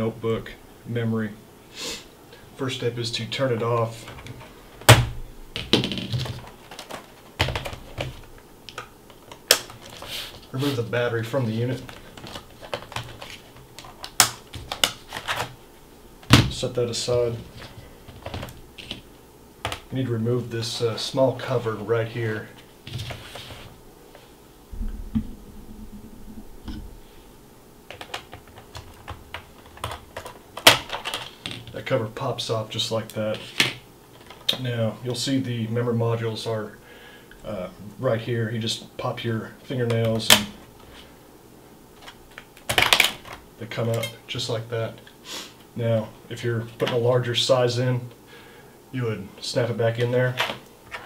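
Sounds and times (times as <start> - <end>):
plastic clicks and knocks of laptop: 4.9 - 10.0.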